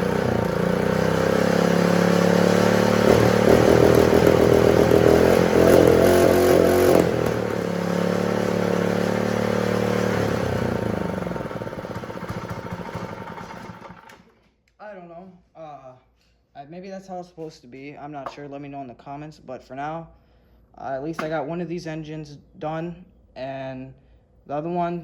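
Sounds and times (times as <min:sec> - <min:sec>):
small engine running: 0:00.0 - 0:14.3.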